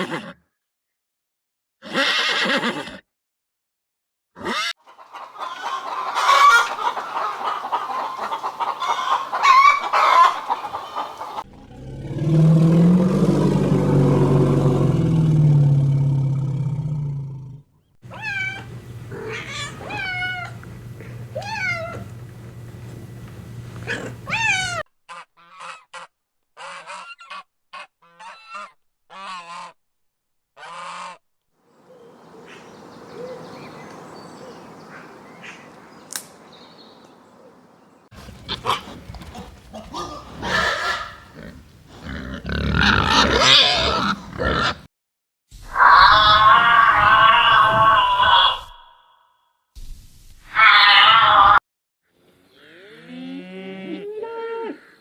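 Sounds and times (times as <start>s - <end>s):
goose-like honking: 4.6s - 11.5s, 38.2s - 42.1s
long low animal call: 11.4s - 24.8s, 38.2s - 44.9s, 45.7s - 49.2s.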